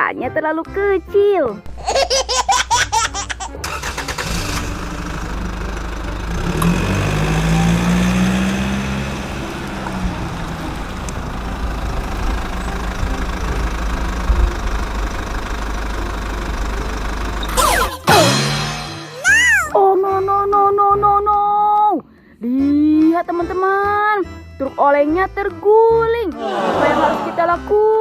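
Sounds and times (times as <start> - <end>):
truck engine running: 2.6 - 19.1.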